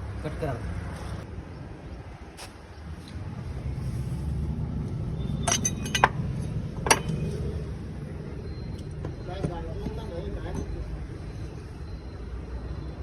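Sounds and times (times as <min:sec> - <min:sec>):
sharp metallic clinks: 0:05.4 - 0:07.4.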